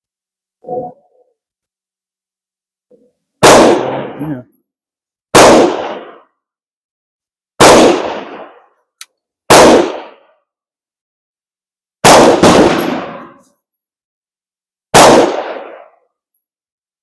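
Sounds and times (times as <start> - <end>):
gunshots: 3.4 - 4.4, 5.3 - 6.2, 7.6 - 8.6, 9.5 - 10.2, 12.0 - 13.4, 15.0 - 15.9.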